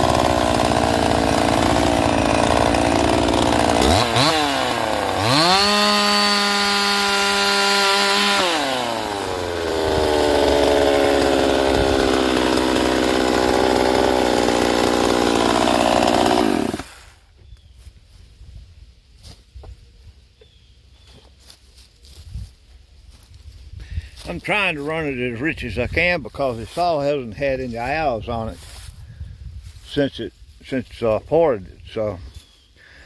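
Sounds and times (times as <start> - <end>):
chainsaw cutting wood: 0.0 - 17.3.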